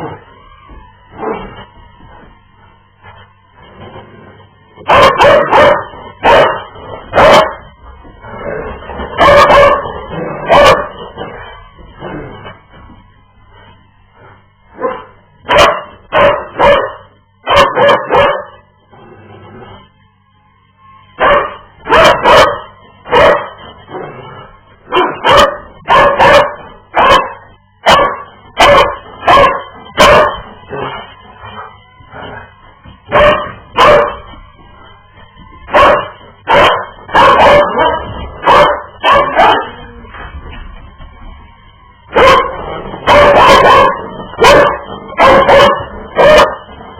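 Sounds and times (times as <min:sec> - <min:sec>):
dog barking and yipping: 0:04.8 - 0:07.6, 0:09.1 - 0:11.0, 0:14.8 - 0:18.6, 0:21.2 - 0:23.6, 0:24.9 - 0:30.5, 0:33.1 - 0:34.2, 0:35.7 - 0:39.8, 0:42.1 - 0:46.7.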